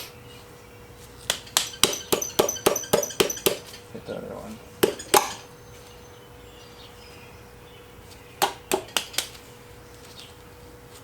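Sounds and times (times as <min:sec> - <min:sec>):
hammer striking engine parts: 0:01.3 - 0:03.9, 0:04.8 - 0:05.5.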